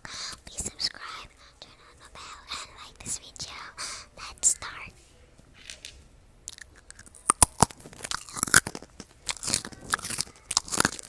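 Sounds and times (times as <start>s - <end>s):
crunchy food being chewed: 6.5s - 11.0s.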